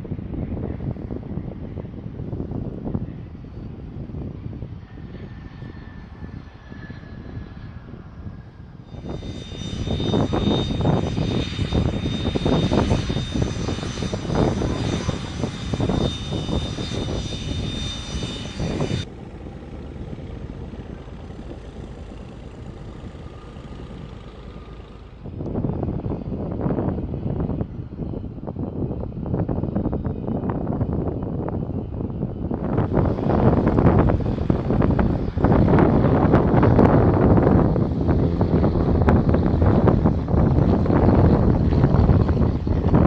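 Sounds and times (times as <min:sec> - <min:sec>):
aircraft engine rumble: 0:00.0 - 0:43.0
high steady whine: 0:08.7 - 0:26.0, 0:30.4 - 0:43.0.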